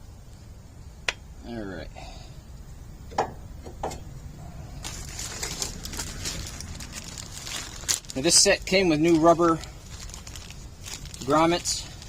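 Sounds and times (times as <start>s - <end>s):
low steady hum: 0.0s - 12.0s
rustling: 3.6s - 12.0s.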